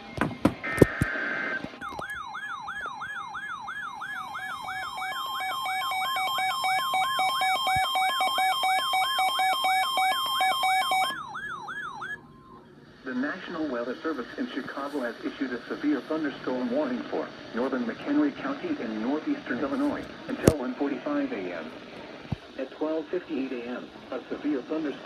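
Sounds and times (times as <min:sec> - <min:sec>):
electronic siren tone sweeping: 0:01.5 - 0:12.7
high electronic tones: 0:01.8 - 0:12.6.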